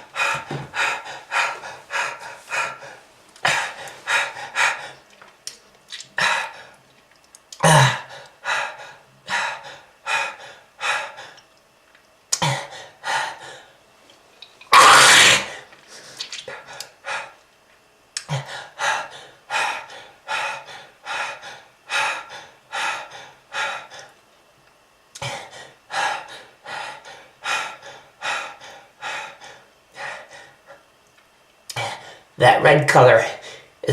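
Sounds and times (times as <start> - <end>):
person coughing: 7.6 - 8.1.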